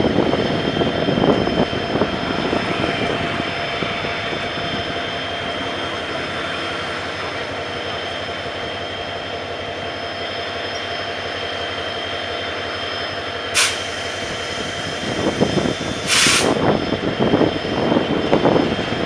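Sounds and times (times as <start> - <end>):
diesel locomotive drone: 0.0 - 19.0
air hiss: 13.6 - 16.6.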